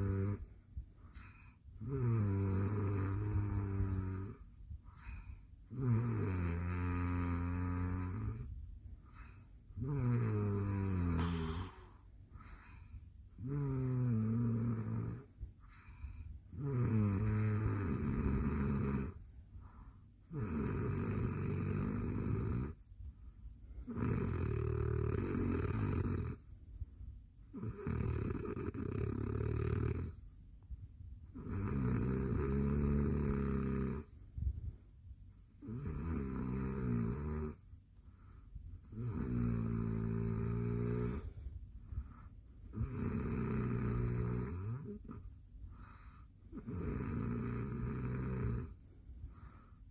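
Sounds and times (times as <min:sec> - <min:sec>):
man snoring loudly: 0:00.0 - 0:00.4, 0:01.8 - 0:04.4, 0:05.7 - 0:08.4, 0:09.8 - 0:12.0, 0:13.4 - 0:15.3, 0:16.5 - 0:19.2, 0:20.3 - 0:22.8, 0:23.9 - 0:26.4, 0:27.6 - 0:30.2, 0:31.4 - 0:34.1, 0:35.6 - 0:37.6, 0:38.9 - 0:41.3, 0:42.7 - 0:45.2, 0:46.6 - 0:48.8
quiet breathing: 0:00.0 - 0:49.9.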